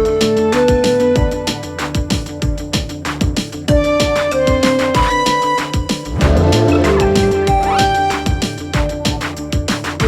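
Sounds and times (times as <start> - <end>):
electronic beat kick drum: 0.0 - 10.0
sustained synth notes: 6.1 - 8.4.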